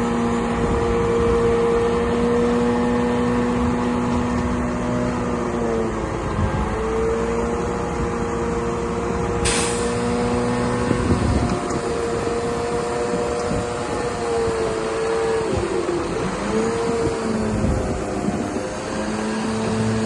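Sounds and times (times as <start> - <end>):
bulldozer diesel engine running: 0.0 - 20.0
short sharp hiss: 9.4 - 10.1.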